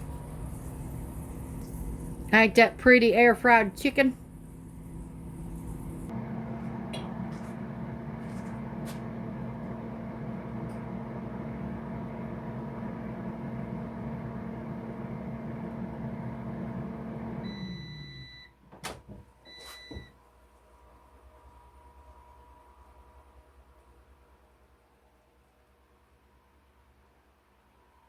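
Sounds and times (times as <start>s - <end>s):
air fryer fan humming: 0.0s - 18.5s.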